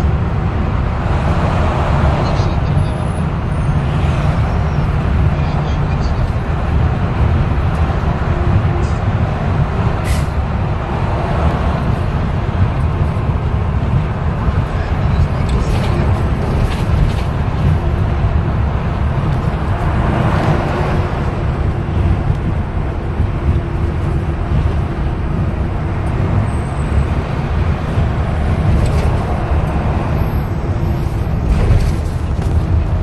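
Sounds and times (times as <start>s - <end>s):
vehicle engine and tyre noise: 0.0s - 33.0s.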